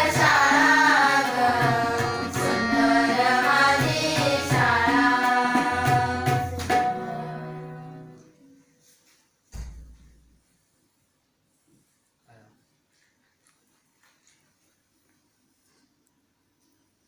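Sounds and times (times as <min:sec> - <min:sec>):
tabla: 0:00.0 - 0:07.4
girls singing together: 0:00.0 - 0:08.2
harmonium: 0:00.0 - 0:08.4
low thump: 0:09.5 - 0:10.2.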